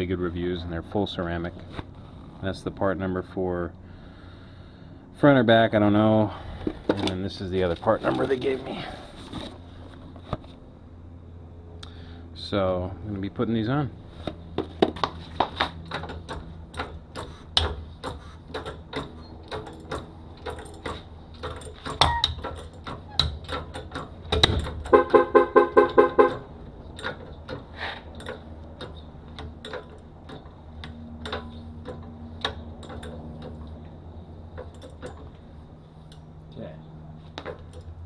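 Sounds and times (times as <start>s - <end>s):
steady low hum: 0.0s - 38.0s
handling clicks and knocks: 6.6s - 8.6s, 14.2s - 36.3s, 37.2s - 38.0s.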